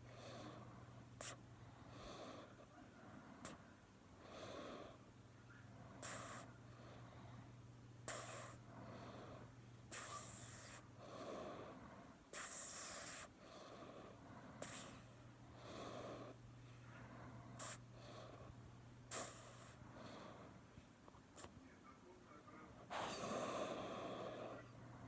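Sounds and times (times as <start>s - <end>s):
cat snoring softly: 0.0s - 5.0s, 6.0s - 7.3s, 8.0s - 16.4s, 19.1s - 20.6s, 22.9s - 24.7s
steady low hum: 0.0s - 25.0s.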